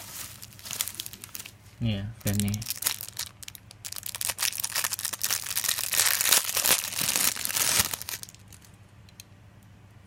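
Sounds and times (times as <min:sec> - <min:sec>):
packaging crinkling and rustling: 0:00.0 - 0:01.6, 0:02.2 - 0:08.8.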